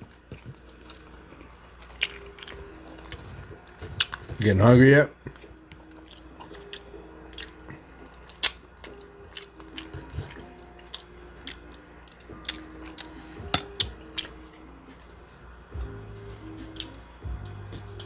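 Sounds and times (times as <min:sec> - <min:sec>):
chewing and biting: 0:00.0 - 0:04.5, 0:05.2 - 0:14.6, 0:16.7 - 0:18.0.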